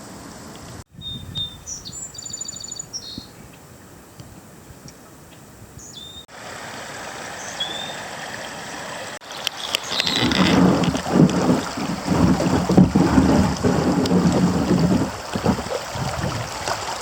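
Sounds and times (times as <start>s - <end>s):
outdoor background noise: 0.0s - 17.0s
bird whistled notes: 1.0s - 3.3s, 5.8s - 6.3s
songbird trilling: 1.0s - 3.6s, 5.3s - 6.3s, 7.4s - 8.0s, 9.6s - 10.5s.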